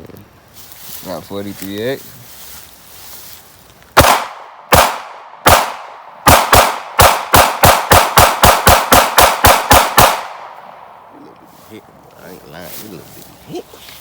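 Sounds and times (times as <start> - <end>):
pistol gunshots: 4.0 - 10.9.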